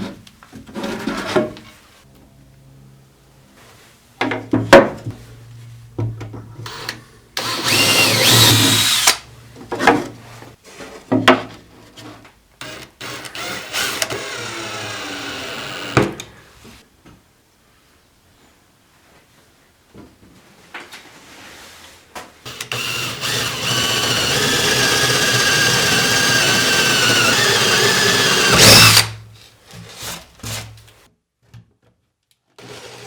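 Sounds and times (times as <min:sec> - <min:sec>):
power tools whining: 0:06.6 - 0:09.3, 0:12.6 - 0:16.7, 0:22.5 - 0:29.2.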